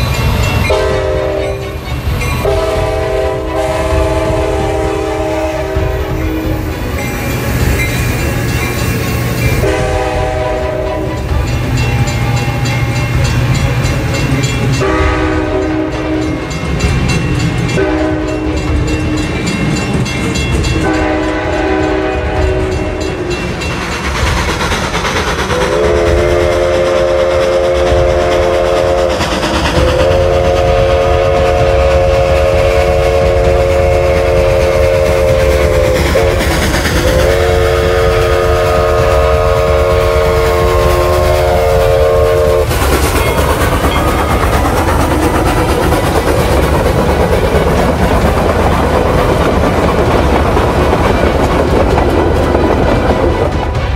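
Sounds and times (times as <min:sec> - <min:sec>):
moving train rumble: 0:00.0 - 0:53.9
train horn blasts: 0:00.6 - 0:08.1, 0:09.5 - 0:12.8, 0:14.5 - 0:16.6, 0:17.7 - 0:18.9, 0:20.8 - 0:23.4, 0:25.6 - 0:43.4.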